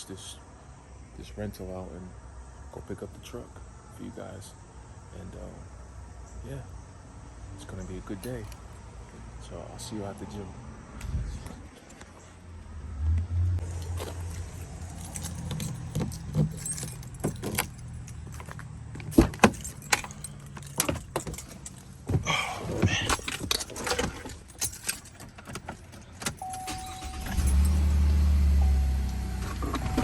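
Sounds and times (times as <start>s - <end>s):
car engine humming: 12.1s - 30.0s
keys jangling: 13.7s - 28.0s.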